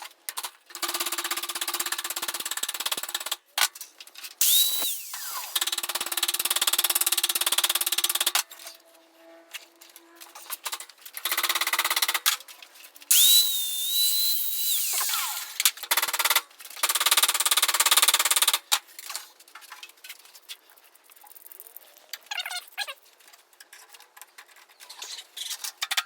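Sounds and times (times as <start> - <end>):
power tool on sheet metal: 4.4 - 8.4, 13.1 - 15.9.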